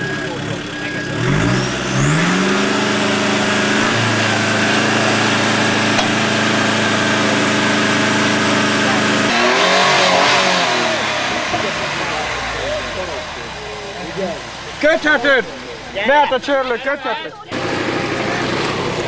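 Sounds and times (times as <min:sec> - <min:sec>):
engine revving under load: 0:00.0 - 0:16.0, 0:17.5 - 0:19.0
voices shouting: 0:10.8 - 0:18.9.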